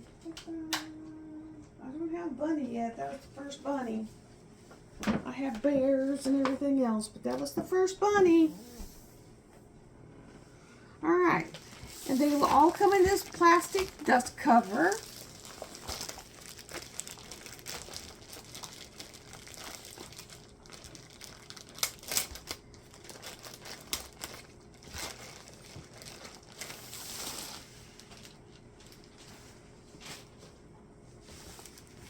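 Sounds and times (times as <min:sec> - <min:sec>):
plastic sheeting crinkling: 0:11.4 - 0:30.4, 0:31.2 - 0:32.0.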